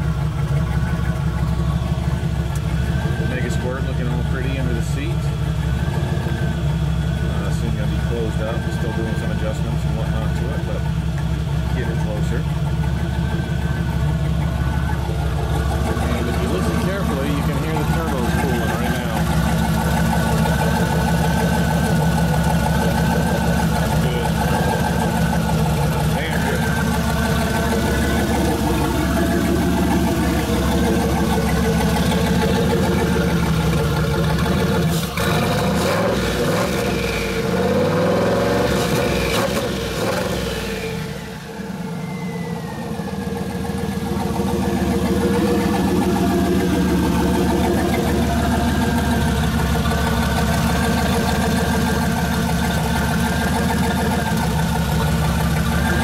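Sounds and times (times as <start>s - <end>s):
car engine idling: 0.0s - 56.0s
turbo whistle: 41.0s - 44.0s.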